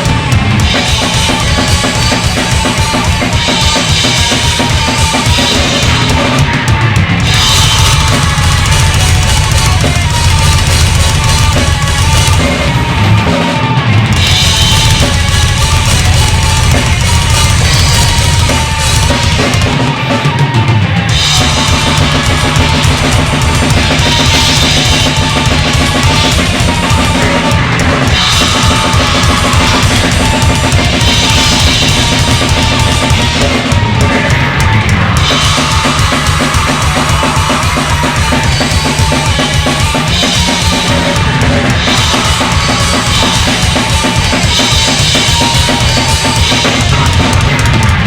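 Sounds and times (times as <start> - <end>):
bass drum: 0.0 - 48.0
cymbals: 0.0 - 48.0
rock song: 0.0 - 48.0.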